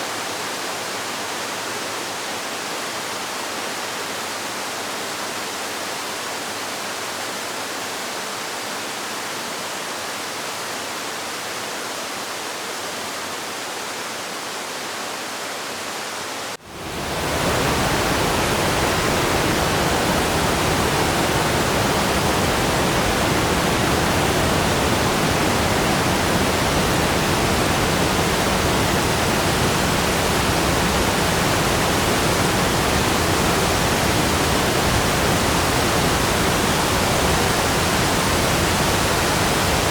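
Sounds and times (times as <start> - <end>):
waterfall rushing: 16.4 - 39.9.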